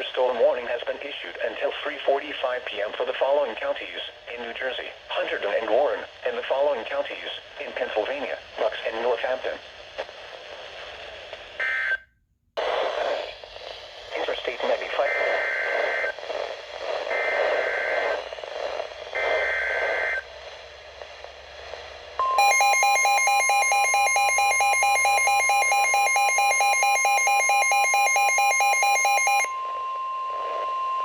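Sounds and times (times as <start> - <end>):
radio hiss: 0.0 - 11.7, 12.6 - 22.2
harsh pulsing alarm: 22.2 - 31.0
steady warning alarm tone: 22.2 - 31.0.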